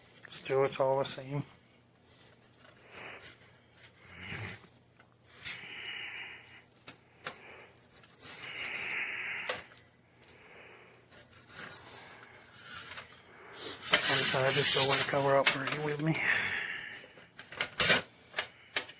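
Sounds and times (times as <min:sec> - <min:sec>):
utensil scraping a pizza pan: 0:13.6 - 0:15.7.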